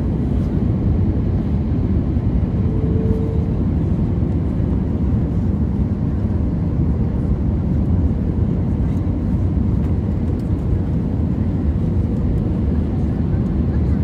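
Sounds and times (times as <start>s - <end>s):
jet engines and rushing air: 0.0s - 14.0s
faint brief tone: 2.6s - 3.6s.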